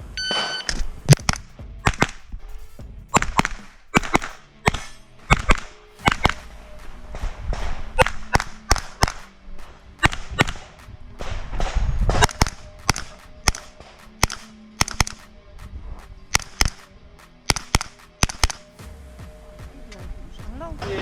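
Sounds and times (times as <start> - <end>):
carbine gunshots: 3.1 - 15.4, 16.3 - 18.7.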